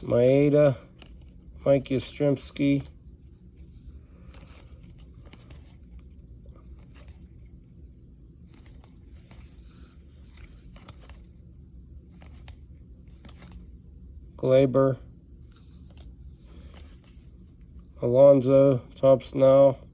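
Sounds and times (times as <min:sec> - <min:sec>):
trading cards rustling and clicking: 0:00.0 - 0:13.9, 0:15.3 - 0:18.0.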